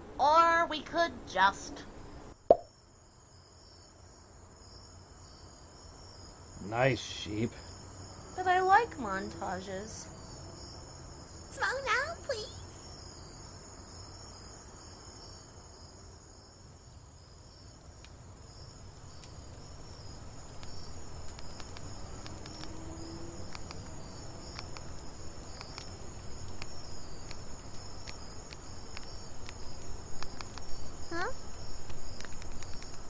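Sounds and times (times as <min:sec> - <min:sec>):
crickets chirping: 0:01.8 - 0:33.0
sharp clicks: 0:24.5 - 0:30.8.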